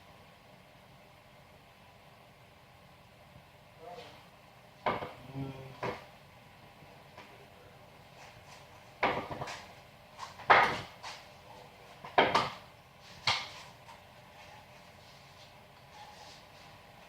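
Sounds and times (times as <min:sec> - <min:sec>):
hard parts knocking and clattering: 0:04.8 - 0:05.2, 0:09.0 - 0:09.7, 0:10.4 - 0:11.0, 0:12.0 - 0:13.6.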